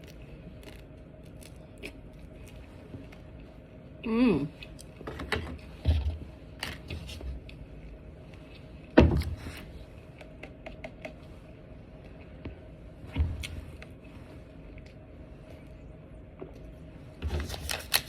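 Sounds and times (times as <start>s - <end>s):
person humming mmm: 4.0s - 4.6s.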